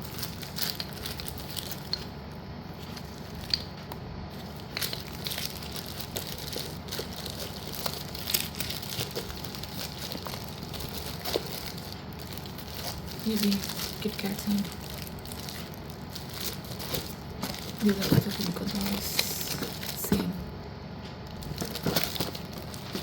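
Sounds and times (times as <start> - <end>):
plastic packaging crinkling: 0.0 - 23.0.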